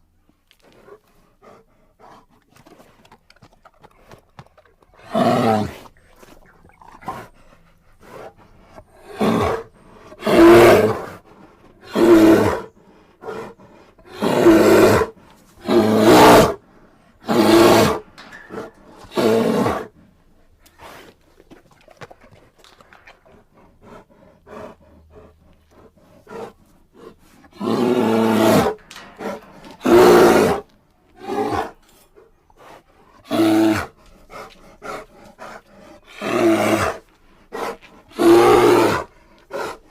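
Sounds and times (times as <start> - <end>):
bear roaring and growling: 4.9 - 5.9, 8.0 - 20.0, 23.2 - 32.3, 33.1 - 39.9.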